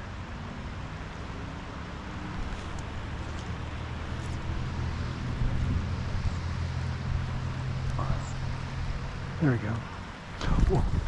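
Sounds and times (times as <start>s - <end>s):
wind rumbling on microphone: 2.2s - 11.0s.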